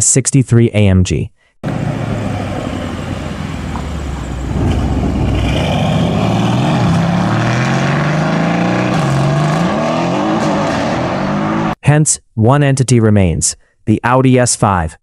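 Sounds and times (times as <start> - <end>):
car engine accelerating hard: 1.6 - 11.8.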